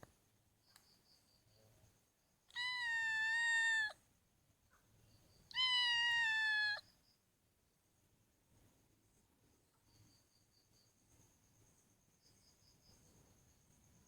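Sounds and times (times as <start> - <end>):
cat meowing: 2.5 - 4.0, 5.5 - 6.8.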